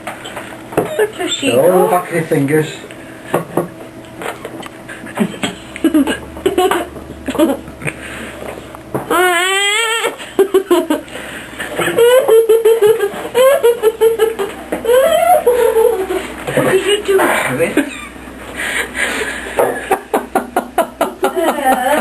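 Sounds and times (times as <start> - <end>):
people laughing and giggling: 4.7 - 8.1, 10.2 - 16.4, 17.8 - 22.0
wavering high-pitched vocal cry: 9.1 - 10.2, 14.8 - 16.3.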